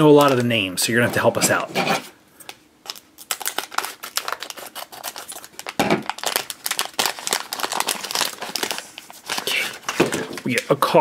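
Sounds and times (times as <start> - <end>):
crinkly packaging torn open: 2.8 - 10.8.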